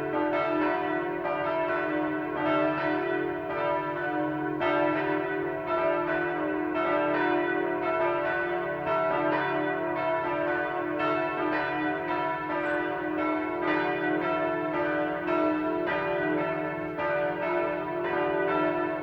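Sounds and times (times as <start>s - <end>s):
church bells ringing: 0.0s - 19.0s.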